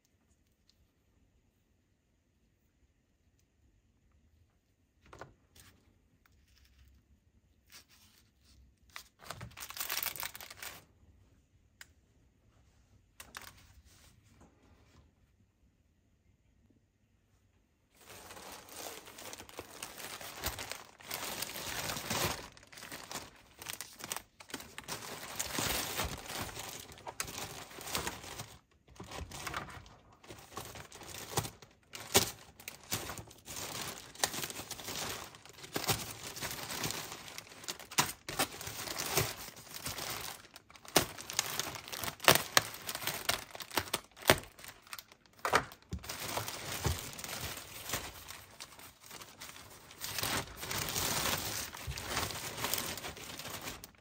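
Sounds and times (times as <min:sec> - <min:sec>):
packaging crinkling and crackling: 0:07.6 - 0:10.9, 0:17.9 - 0:54.0.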